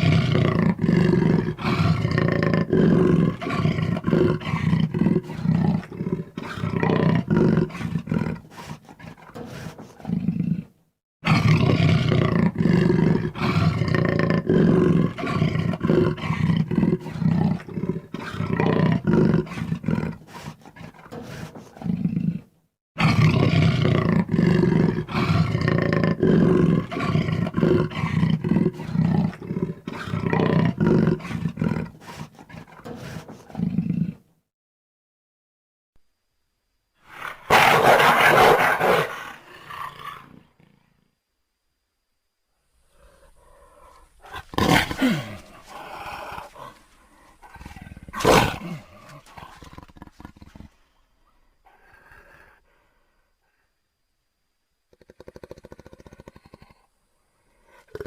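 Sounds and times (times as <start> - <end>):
jaguar grunting call: 0.0 - 34.2, 37.1 - 41.0, 42.9 - 50.8.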